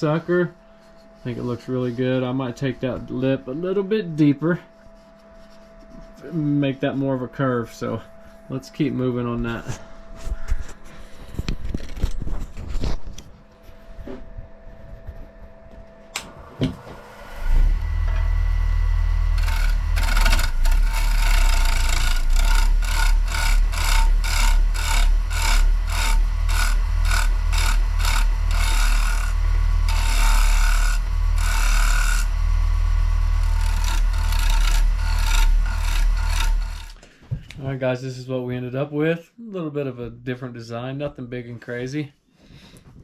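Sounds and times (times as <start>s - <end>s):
wood lathe humming: 0.0s - 9.8s, 16.1s - 37.0s
turning tool scraping wood: 0.0s - 13.0s, 16.2s - 37.0s.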